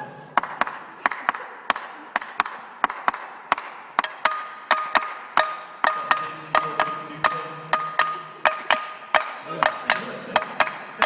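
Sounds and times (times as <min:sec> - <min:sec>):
cowbell rhythm: 0:04.0 - 0:11.0.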